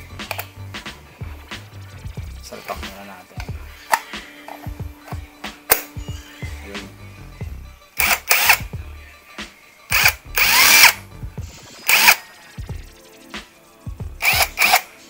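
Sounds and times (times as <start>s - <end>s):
impact wrench motor whirring: 8.0s - 8.7s, 9.9s - 11.0s, 11.8s - 12.2s, 14.2s - 14.9s.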